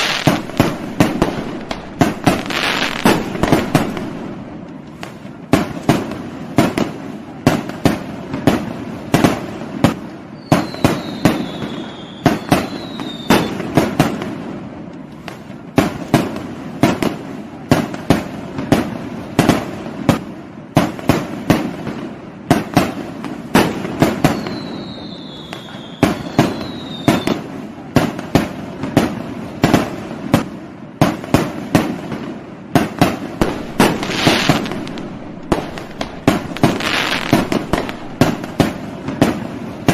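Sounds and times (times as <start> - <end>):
falling firework whistles: 0.0 - 4.4, 10.3 - 13.8, 24.0 - 27.5, 33.4 - 39.9
firework bangs and pops: 0.0 - 39.9.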